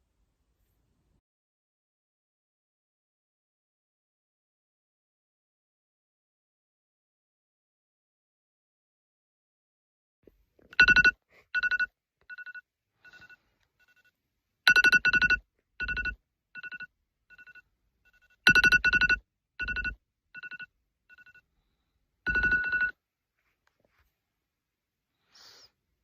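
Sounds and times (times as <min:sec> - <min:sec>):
two-note electronic beeping: 0:14.7 - 0:21.4.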